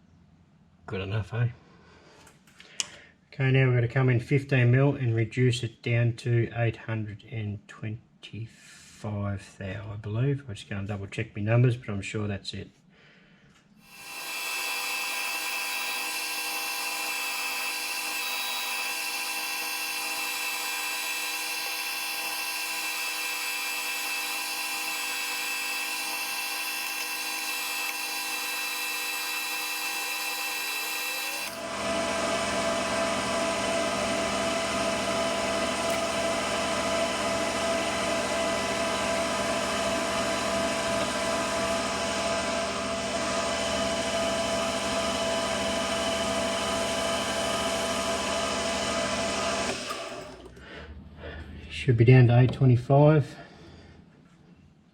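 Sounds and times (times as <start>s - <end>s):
metal lathe whine: 13.9s - 50.4s.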